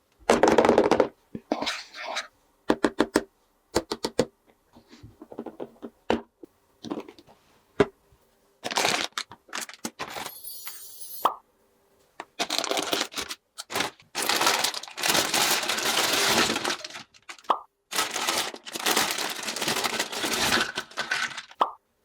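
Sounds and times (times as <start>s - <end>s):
rustling: 12.4s - 21.6s.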